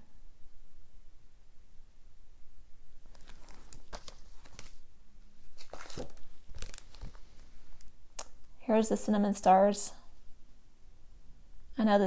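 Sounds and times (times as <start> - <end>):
paper and plastic crinkling: 3.0 - 4.8, 5.4 - 7.9.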